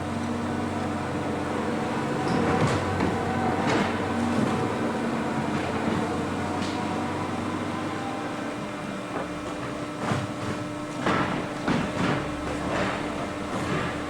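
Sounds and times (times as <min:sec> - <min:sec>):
baler machine hum: 0:00.0 - 0:14.0
sharp knocks and clatters: 0:09.2 - 0:14.0.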